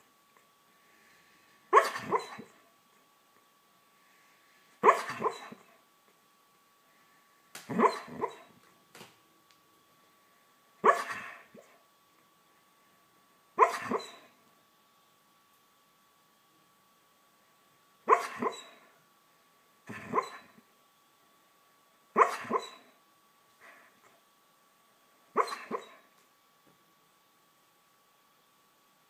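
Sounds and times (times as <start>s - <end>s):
dog barking softly in sleep: 1.7s - 2.6s, 4.8s - 5.7s, 7.7s - 8.6s, 10.8s - 11.8s, 13.6s - 14.4s, 18.1s - 18.9s, 19.9s - 20.6s, 22.2s - 23.0s, 25.3s - 26.1s.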